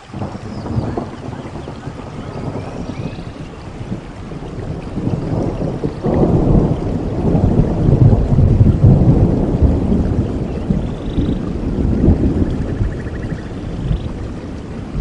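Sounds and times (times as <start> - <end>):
steady rain: 0.0 - 15.0
thunder rumbling: 0.0 - 15.0.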